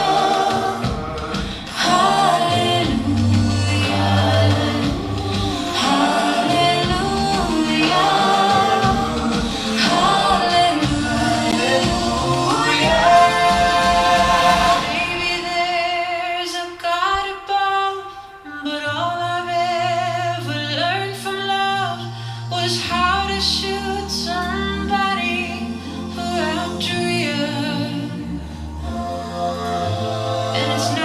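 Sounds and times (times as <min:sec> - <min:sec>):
deep bass voice: 0:00.0 - 0:15.4
vocal group singing in harmony: 0:00.0 - 0:31.0.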